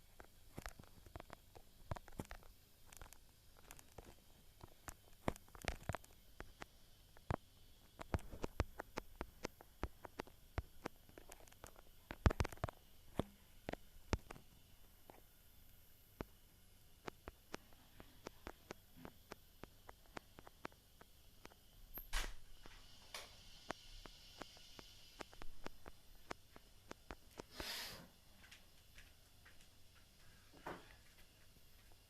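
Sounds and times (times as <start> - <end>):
faint hiss: 0.0 - 32.0
sharp clicks and light knocks: 0.1 - 15.2, 17.0 - 27.5.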